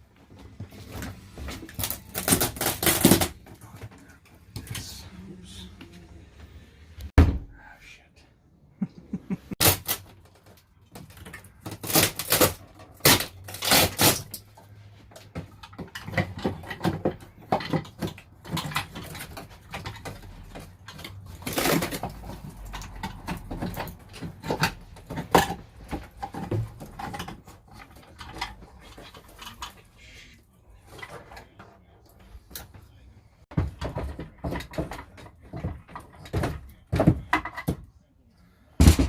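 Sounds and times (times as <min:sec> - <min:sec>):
panelling being pried and banged: 0:00.6 - 0:03.9, 0:09.6 - 0:29.8, 0:33.4 - 0:37.9, 0:38.8 - 0:39.0.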